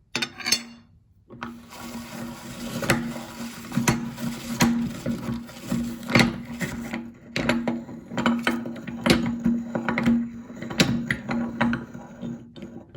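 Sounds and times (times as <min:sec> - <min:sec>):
meat grinder humming: 0:01.5 - 0:10.0.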